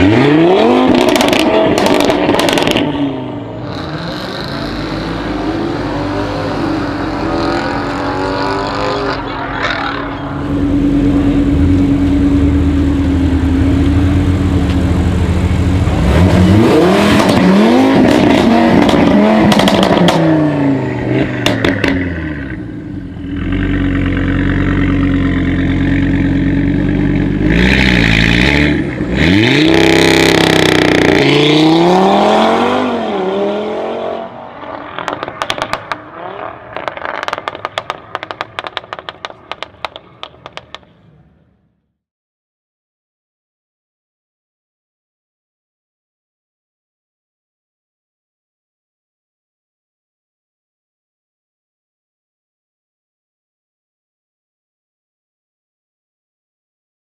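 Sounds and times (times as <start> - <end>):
loud car engine revving: 0.0 - 39.7.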